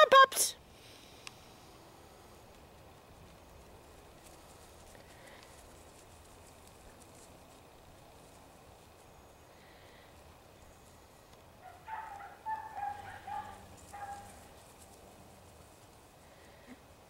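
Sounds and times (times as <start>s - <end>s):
faint outdoor background: 0.0s - 17.0s
animal yelping: 11.6s - 14.4s.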